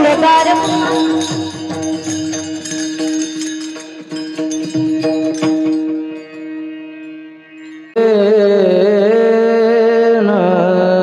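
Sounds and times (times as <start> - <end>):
drum strikes: 0.0 - 6.2
hand cymbal strikes: 0.0 - 8.0.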